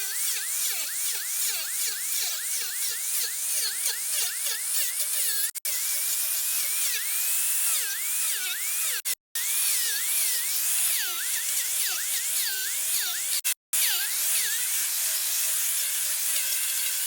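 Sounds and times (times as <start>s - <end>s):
rotary tool whining cutting wood: 0.0s - 17.0s.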